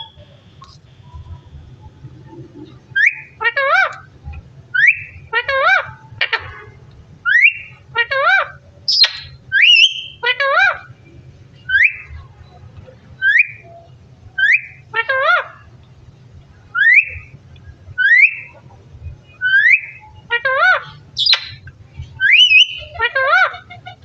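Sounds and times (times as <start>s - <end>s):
parrot whistling: 3.0s - 4.0s, 4.7s - 6.4s, 7.2s - 10.9s, 11.6s - 12.2s, 13.2s - 15.5s, 16.7s - 17.4s, 18.0s - 18.6s, 19.3s - 24.0s
parrot warbling calls: 3.0s - 4.1s, 4.7s - 6.6s, 7.2s - 11.0s, 14.4s - 15.7s, 16.7s - 17.4s, 18.0s - 18.7s, 19.4s - 21.6s, 22.2s - 24.0s.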